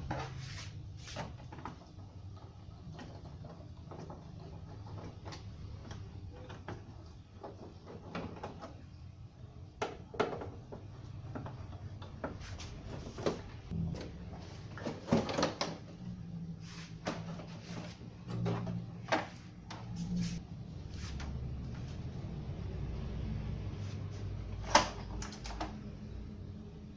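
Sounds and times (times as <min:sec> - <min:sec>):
low steady hum: 0:00.0 - 0:26.9
clicks and rattles of tools: 0:24.6 - 0:25.8.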